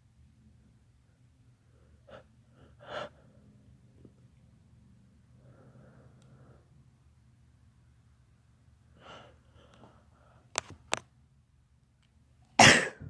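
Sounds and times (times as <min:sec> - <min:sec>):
short sharp sneeze sounds: 0:12.6 - 0:13.0.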